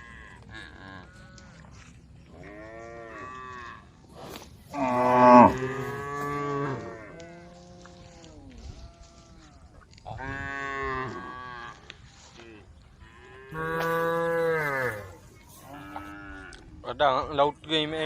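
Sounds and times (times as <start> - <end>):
cattle mooing: 4.7 - 7.4, 13.5 - 16.6.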